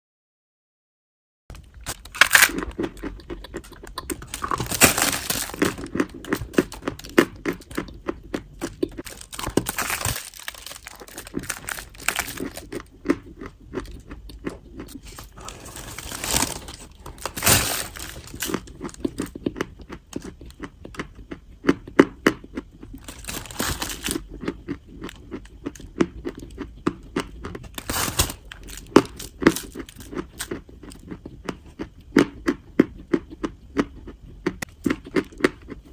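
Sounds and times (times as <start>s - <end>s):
crackly chewing: 1.5s - 35.9s
chalk crunching: 14.9s - 19.2s.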